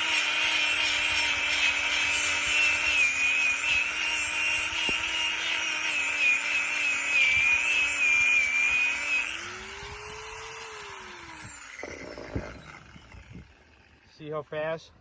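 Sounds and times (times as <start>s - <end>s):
sanding disc scouring wood: 0.0s - 13.0s
angle grinder motor hum: 0.0s - 15.0s.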